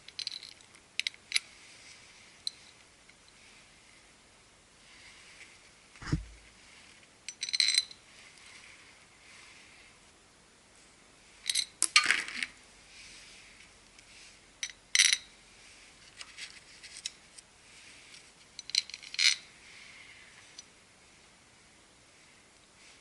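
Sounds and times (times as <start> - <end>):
small metal tools clinking: 0.0 - 1.4, 7.3 - 8.0, 18.6 - 19.5.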